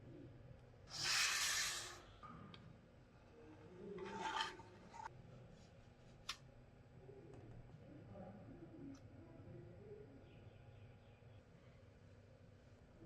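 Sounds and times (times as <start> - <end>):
rubbing scrapes: 0.9 - 2.1, 4.0 - 5.1.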